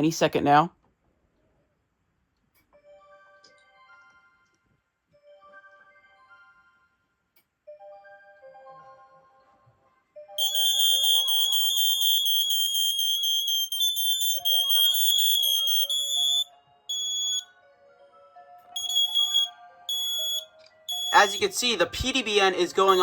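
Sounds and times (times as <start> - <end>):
background music with melody: 2.6 - 13.1, 13.9 - 23.0
alarm beeps: 10.4 - 17.5, 18.8 - 23.0
shrill alarm tone: 10.4 - 17.5, 18.8 - 21.8, 22.5 - 23.0.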